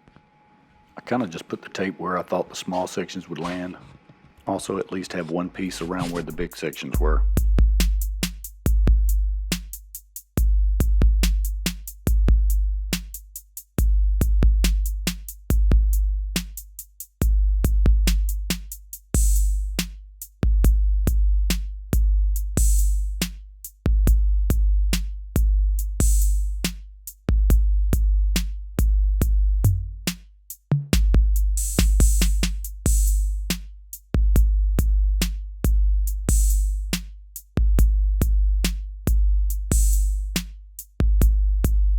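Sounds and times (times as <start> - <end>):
electronic music with drum machine: 5.6 - 10.2, 31.0 - 33.6, 34.2 - 37.0, 37.6 - 41.9
deep bass hits: 5.8 - 9.2.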